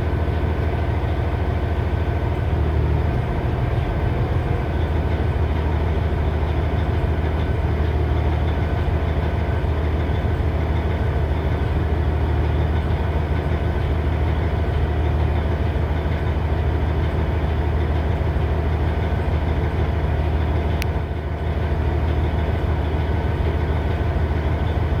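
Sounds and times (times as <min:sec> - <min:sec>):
diesel engine idling: 0:00.0 - 0:25.0
click: 0:20.8 - 0:21.0.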